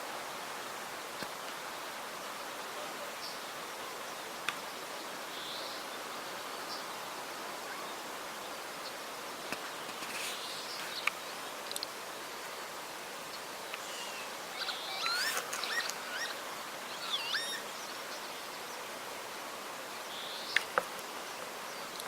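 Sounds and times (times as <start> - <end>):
river water rushing: 10.5 - 22.0
faint high chirps: 13.7 - 17.7.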